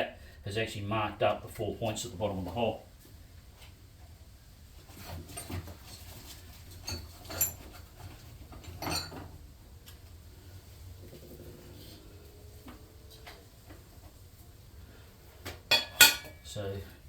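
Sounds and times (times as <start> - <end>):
metal tools clinking on bench: 6.7 - 9.4, 15.7 - 16.5.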